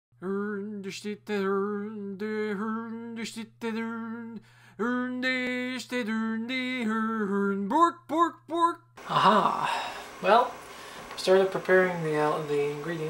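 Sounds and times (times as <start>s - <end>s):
person singing or humming: 0.2s - 9.9s.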